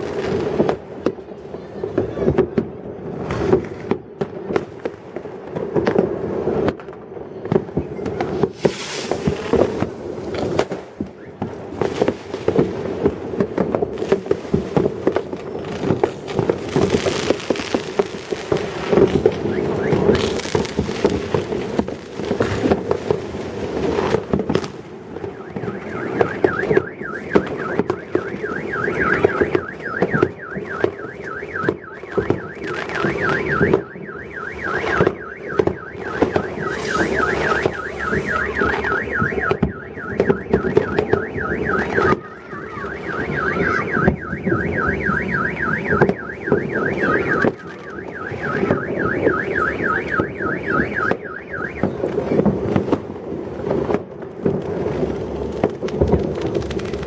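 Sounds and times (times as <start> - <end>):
fireworks banging and crackling: 0.0 - 57.0
car alarm warbling siren: 9.2 - 52.8.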